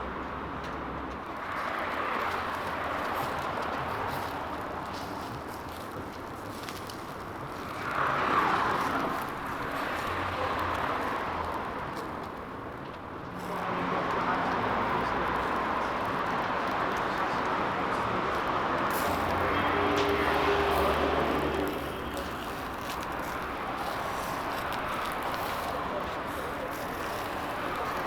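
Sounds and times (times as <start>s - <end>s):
vehicles passing: 0.0s - 28.0s.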